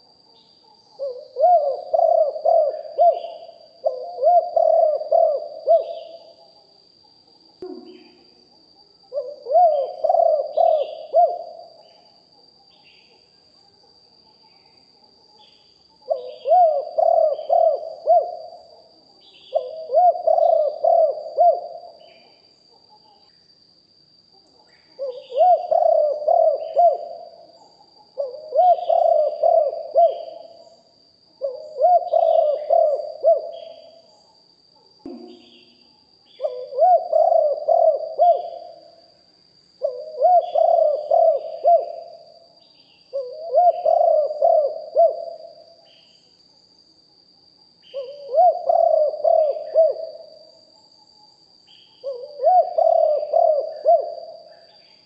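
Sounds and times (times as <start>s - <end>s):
dove cooing: 0.0s - 6.5s, 7.6s - 8.3s, 9.1s - 12.0s, 16.1s - 22.3s, 25.0s - 30.7s, 31.4s - 34.0s, 36.4s - 39.0s, 39.8s - 42.3s, 43.1s - 45.6s, 47.9s - 50.4s, 52.0s - 54.5s
small birds chirping: 24.5s - 38.7s.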